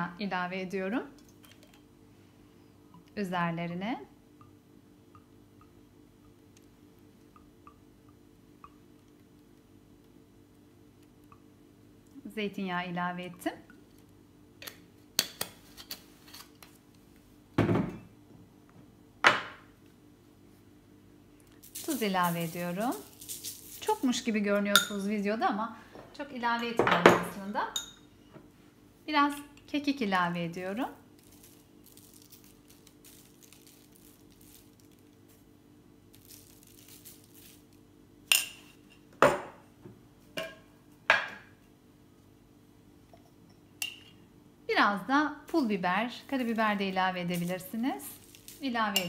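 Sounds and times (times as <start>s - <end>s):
faint steady hum: 0.0s - 49.0s
herbs sprinkling: 21.4s - 25.1s, 30.2s - 38.5s, 45.5s - 49.0s.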